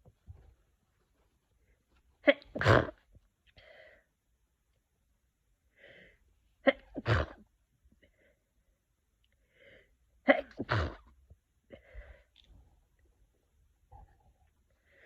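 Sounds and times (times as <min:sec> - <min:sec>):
person sneezing: 0:02.2 - 0:03.0, 0:06.7 - 0:07.4, 0:10.3 - 0:11.1.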